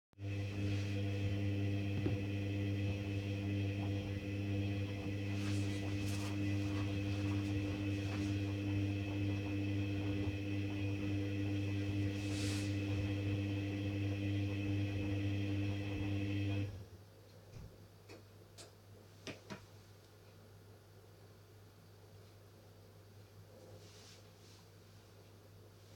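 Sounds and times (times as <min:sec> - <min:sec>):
washing machine motor humming: 0:00.2 - 0:16.9.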